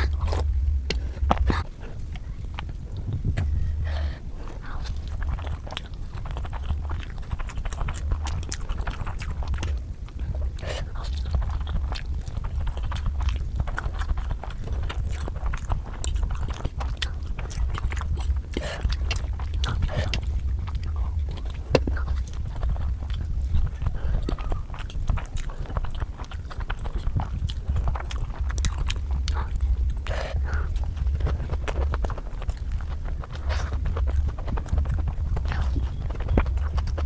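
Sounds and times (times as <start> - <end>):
person chewing food: 0.0 - 37.0
steady low hum: 0.0 - 37.0
wet mouth clicks and crunches: 0.0 - 37.0.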